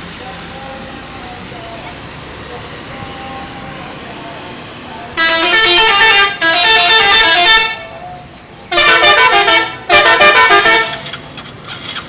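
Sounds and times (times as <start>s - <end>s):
bus multi-tone horn melody: 5.2s - 8.0s, 8.7s - 11.2s.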